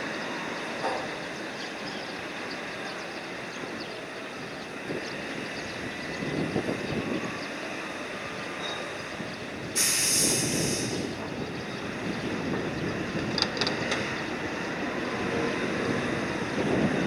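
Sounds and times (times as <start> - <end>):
loud hiss: 9.8 - 11.2.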